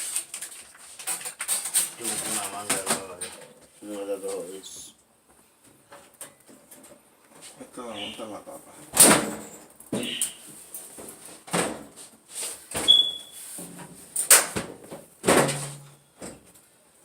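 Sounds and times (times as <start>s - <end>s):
brief squeak: 12.9s - 13.5s
metal panels knocking and scraping: 13.6s - 16.4s.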